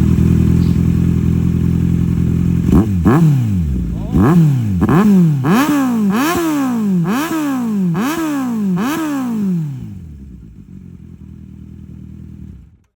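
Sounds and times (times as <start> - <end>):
motorcycle engine revving and idling: 0.0 - 13.0.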